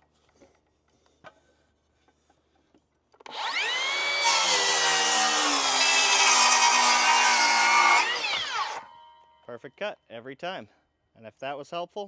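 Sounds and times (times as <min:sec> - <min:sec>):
circular saw cutting wood: 0:03.3 - 0:09.0.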